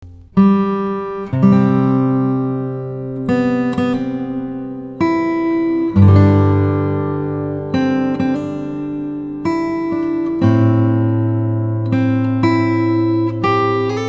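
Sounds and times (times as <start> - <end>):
acoustic guitar picking: 0.0 - 14.0.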